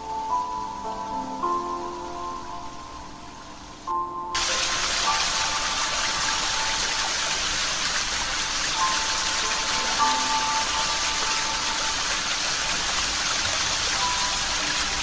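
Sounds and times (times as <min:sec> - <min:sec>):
light hiss: 0:00.0 - 0:15.0
rushing water: 0:04.4 - 0:15.0.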